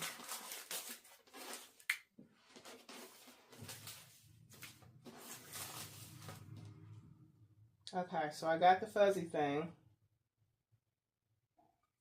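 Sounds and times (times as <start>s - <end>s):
rustling handling noise: 0.0s - 6.6s.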